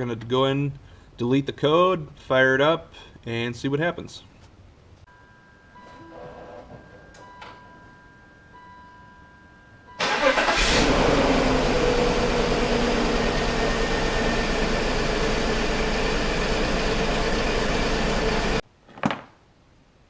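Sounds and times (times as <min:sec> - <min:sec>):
faint steady tones: 0:05.0 - 0:10.0
car engine starting and idling: 0:09.9 - 0:18.6.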